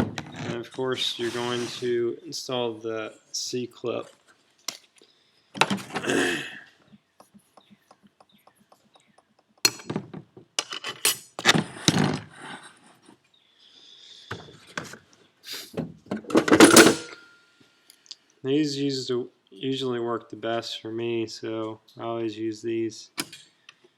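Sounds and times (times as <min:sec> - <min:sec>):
metal clinks and scrapes: 0:10.6 - 0:11.4.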